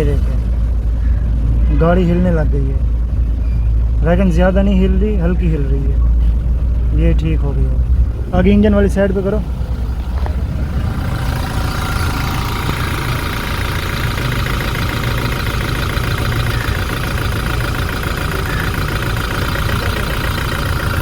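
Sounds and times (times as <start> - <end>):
diesel engine idling: 0.0 - 21.0.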